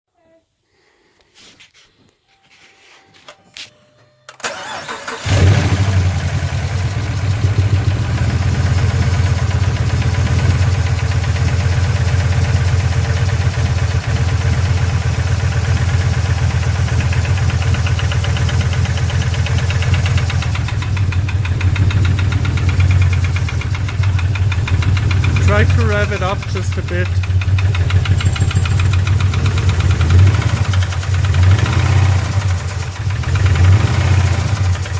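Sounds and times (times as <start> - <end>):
engine cranking and starting: 4.3 - 8.7, 12.8 - 34.9
engine idling rough with knock: 5.7 - 34.9.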